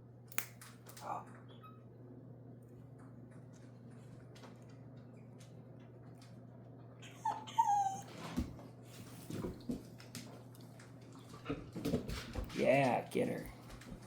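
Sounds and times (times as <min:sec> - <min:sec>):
dog whining: 0:07.0 - 0:08.5.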